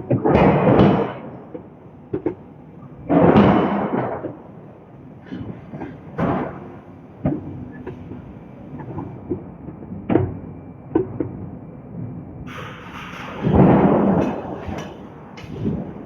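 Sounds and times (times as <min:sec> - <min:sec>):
hydraulic hiss: 0:12.5 - 0:15.8
metal knocks: 0:12.6 - 0:16.0.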